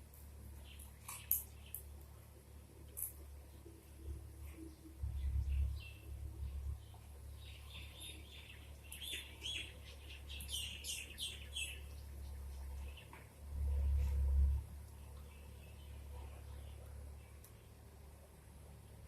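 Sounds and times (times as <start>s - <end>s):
small birds chirping: 0.5s - 2.2s, 2.8s - 13.3s, 14.8s - 17.8s.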